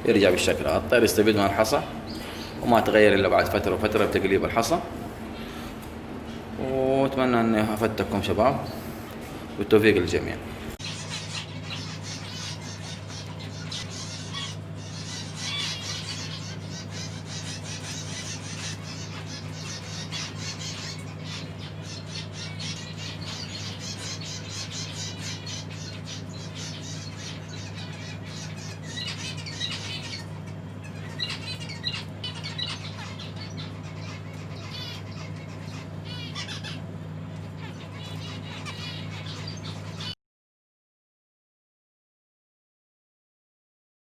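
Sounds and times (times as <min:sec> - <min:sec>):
birds chattering and squawking: 0:00.0 - 0:40.2
steady low hum: 0:00.0 - 0:40.2.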